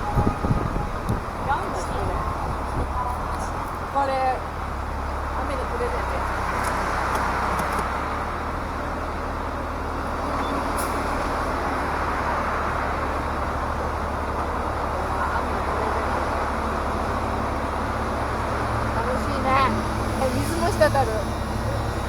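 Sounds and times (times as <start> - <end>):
wind rush and road noise: 0.0 - 9.6
engine and tyre drone: 0.0 - 22.0.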